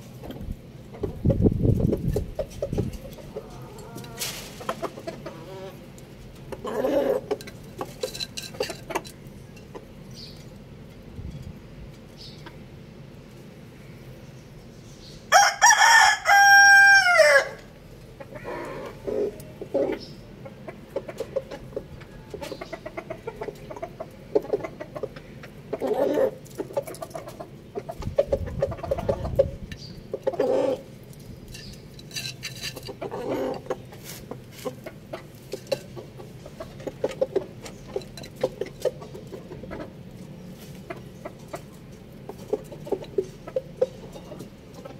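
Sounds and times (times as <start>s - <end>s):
fowl clucking: 2.2s - 5.8s, 15.4s - 30.9s, 32.7s - 40.0s
rooster crowing: 15.3s - 17.7s.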